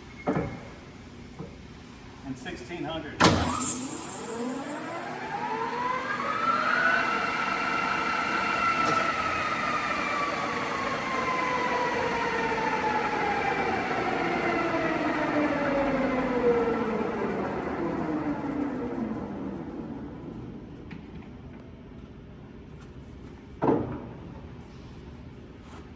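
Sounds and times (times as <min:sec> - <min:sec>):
lathe spindle whine: 0:03.3 - 0:20.3.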